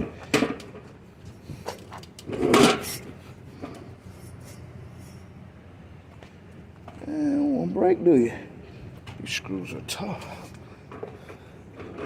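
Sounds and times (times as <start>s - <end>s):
scraping clatter: 0.0s - 5.2s.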